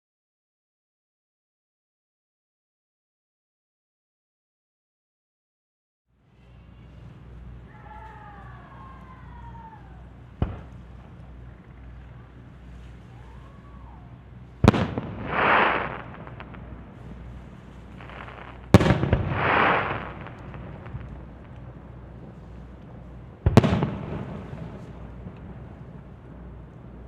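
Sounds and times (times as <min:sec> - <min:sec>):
fireworks bursting: 0:08.1 - 0:27.0
fireworks hiss: 0:14.6 - 0:26.0.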